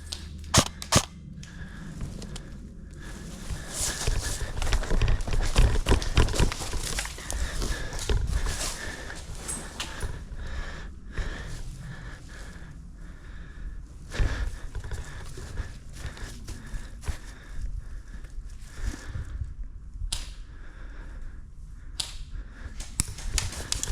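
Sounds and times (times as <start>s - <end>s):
running footsteps thudding: 3.2s - 10.6s, 14.1s - 17.5s
gear knocking and rattling: 3.5s - 10.3s.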